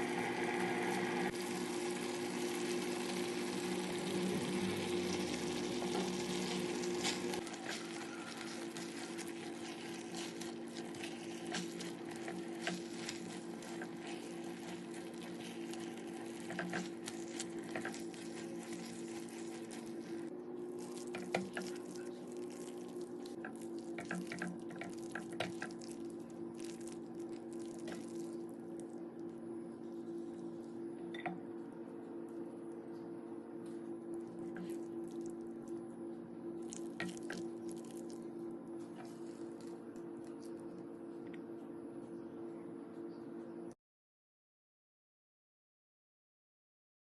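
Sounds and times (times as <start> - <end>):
steady cooking hiss: 0.0 - 25.8.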